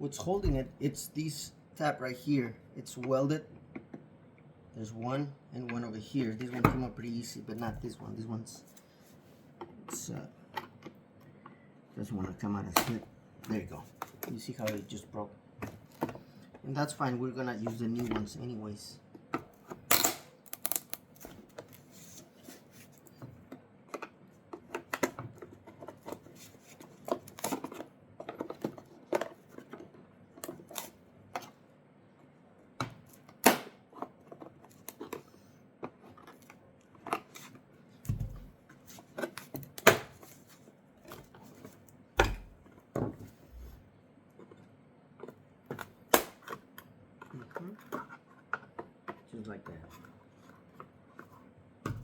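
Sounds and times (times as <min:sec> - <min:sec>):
hand tools clicking and scraping plastic: 0:19.4 - 0:31.6, 0:32.8 - 0:41.8.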